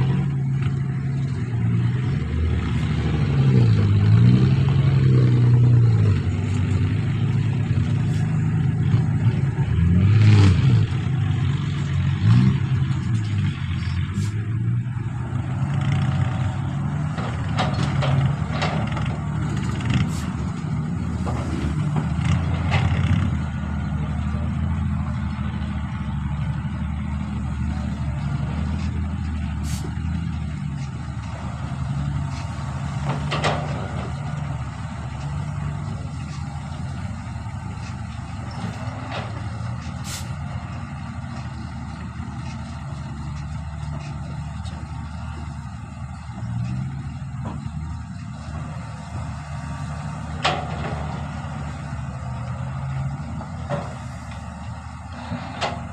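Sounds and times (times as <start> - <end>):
excavator diesel engine working: 0.0 - 55.9
metallic clanks: 50.1 - 52.0.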